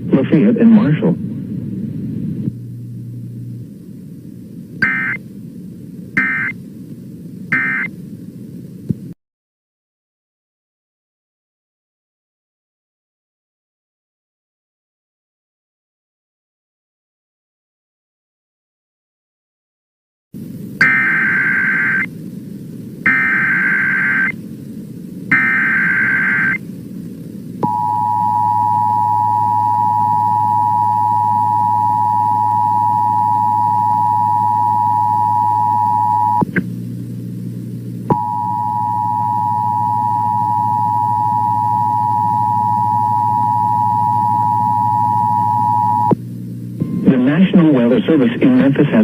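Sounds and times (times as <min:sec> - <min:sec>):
two-tone attention signal: 0:04.8 - 0:05.2, 0:06.2 - 0:06.5, 0:07.5 - 0:07.9, 0:20.8 - 0:22.1, 0:23.1 - 0:24.3, 0:25.3 - 0:26.6, 0:27.6 - 0:36.4, 0:38.1 - 0:46.1
warbling data tone bursts: 0:04.8 - 0:05.2, 0:06.2 - 0:06.6, 0:07.5 - 0:07.9, 0:20.8 - 0:22.1, 0:23.0 - 0:24.4, 0:25.3 - 0:26.6, 0:27.6 - 0:36.5, 0:38.1 - 0:46.2.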